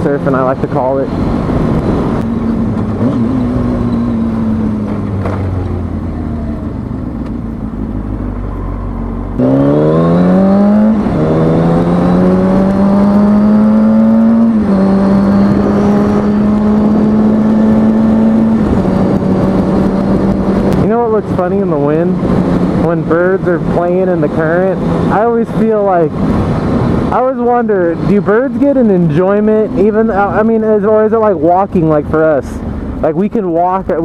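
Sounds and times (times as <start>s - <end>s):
motorcycle engine revving: 1.1s - 8.4s, 9.3s - 25.6s
wind rushing: 9.3s - 23.7s.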